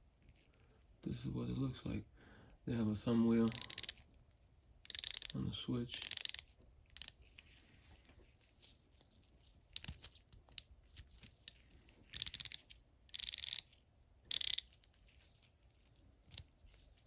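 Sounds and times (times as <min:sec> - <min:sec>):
ratchet clicking: 0:03.5 - 0:04.0, 0:04.9 - 0:06.4, 0:12.2 - 0:13.7, 0:14.3 - 0:14.7.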